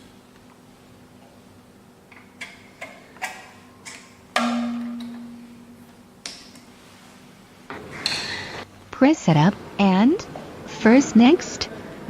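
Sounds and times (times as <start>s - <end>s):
ringing metallic knock: 4.4s - 5.9s.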